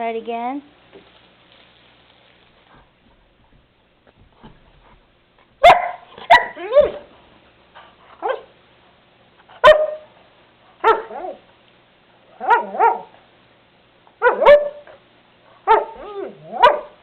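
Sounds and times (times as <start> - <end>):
dog barking and yowling: 5.6 - 7.2, 8.2 - 8.6, 9.6 - 10.2, 10.8 - 11.5, 12.3 - 13.2, 14.2 - 15.0, 15.6 - 17.0.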